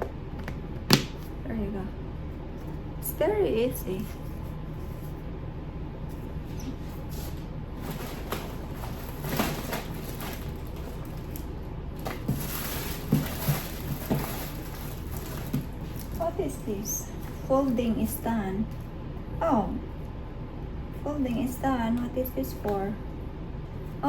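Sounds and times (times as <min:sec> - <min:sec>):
steady low hum: 0:00.0 - 0:24.0
plastic packaging crinkling: 0:07.8 - 0:16.4.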